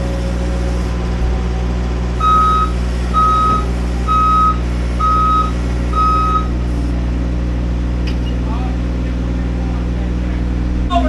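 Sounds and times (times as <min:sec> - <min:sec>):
engine running: 0:00.0 - 0:11.0
backup alarm beeping: 0:02.2 - 0:06.6, 0:10.6 - 0:11.0.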